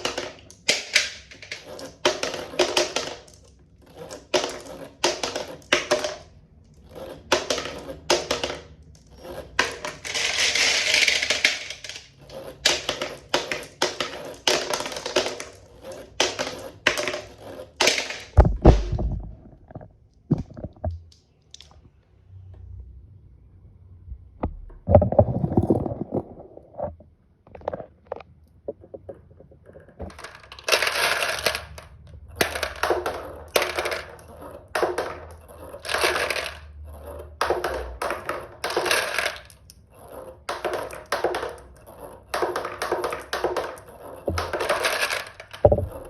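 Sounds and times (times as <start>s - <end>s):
marbles rattling down plastic run: 0.0s - 19.0s, 30.0s - 46.0s.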